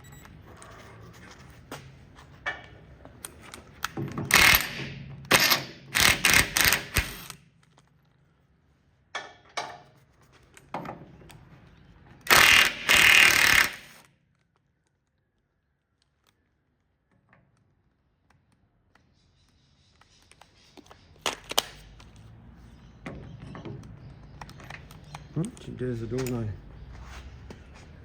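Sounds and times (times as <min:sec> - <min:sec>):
wrench rattling: 0:12.3 - 0:14.0.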